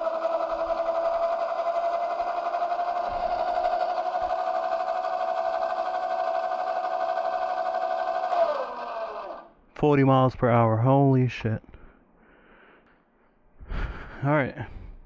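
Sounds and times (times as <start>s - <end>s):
electric motor whining: 0.0s - 9.6s.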